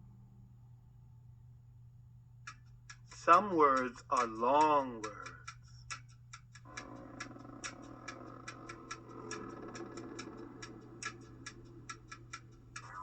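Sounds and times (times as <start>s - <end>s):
faint low hum: 0.0s - 13.0s
light ticking clicks: 2.4s - 13.0s
person narrating: 3.2s - 5.4s.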